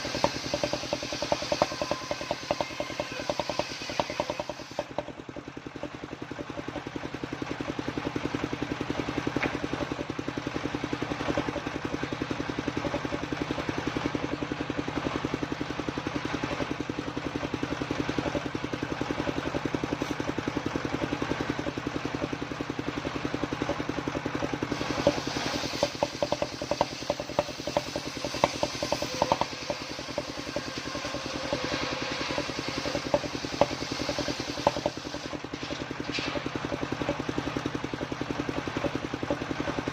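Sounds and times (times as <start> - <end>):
clattering ticks: 0.0 - 6.8, 23.0 - 37.4
circular saw engine running: 0.0 - 39.9.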